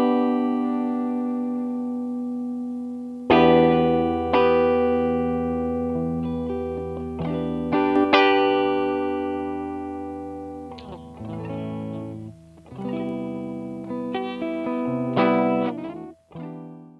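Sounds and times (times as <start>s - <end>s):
electric guitar chords ringing: 0.0s - 16.9s.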